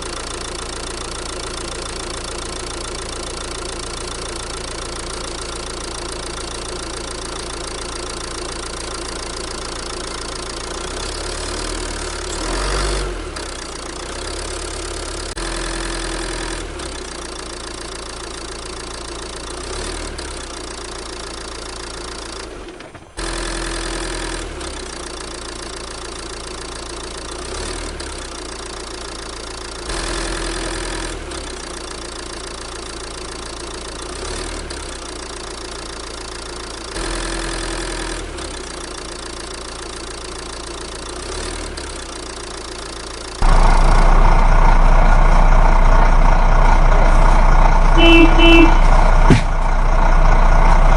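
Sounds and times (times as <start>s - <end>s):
heavy vehicle engine knocking: 37.8s - 50.9s.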